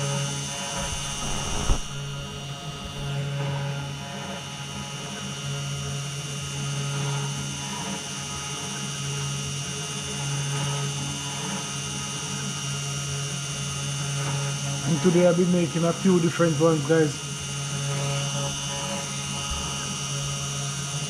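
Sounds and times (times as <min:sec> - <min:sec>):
router carving wood: 0:00.0 - 0:03.7
spindle motor humming: 0:00.0 - 0:03.9, 0:13.1 - 0:21.0.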